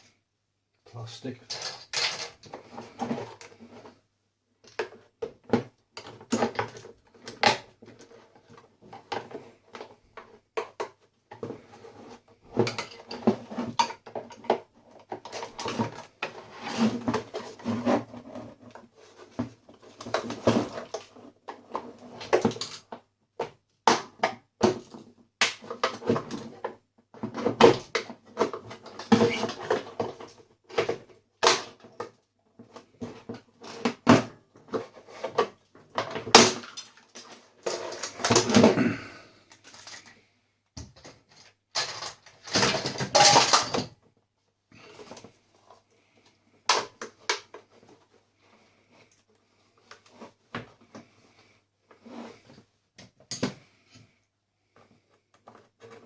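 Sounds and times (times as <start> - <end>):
coffee maker parts clattering: 41.8 - 43.9.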